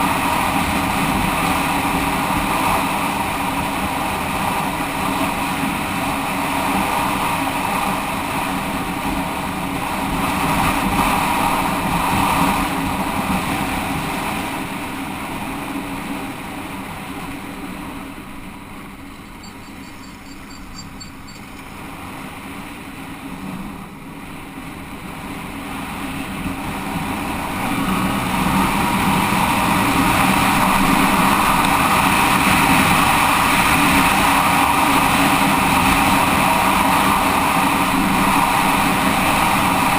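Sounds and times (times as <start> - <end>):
motorcycle engine running: 14.9 - 22.0.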